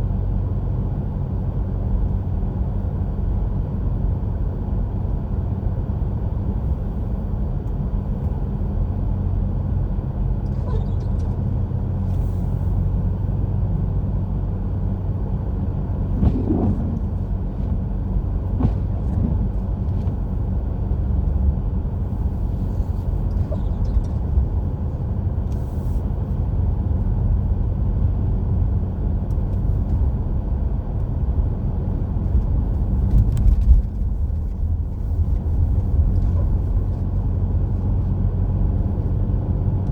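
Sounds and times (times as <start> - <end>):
car engine and tyres rumbling: 0.0 - 39.9.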